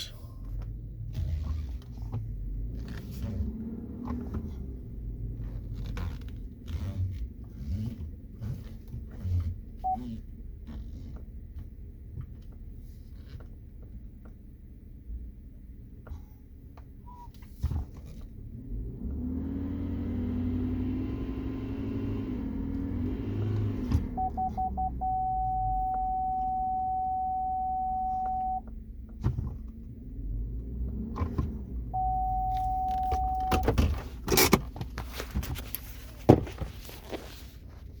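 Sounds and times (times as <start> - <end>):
engine rumble: 0.0 - 38.0
electronic warning tone beeping: 24.2 - 28.6, 31.9 - 33.7.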